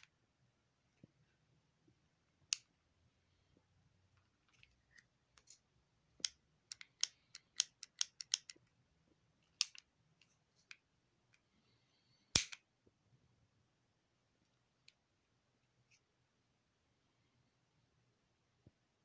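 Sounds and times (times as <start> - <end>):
sharp pistol snap: 12.4 - 12.6.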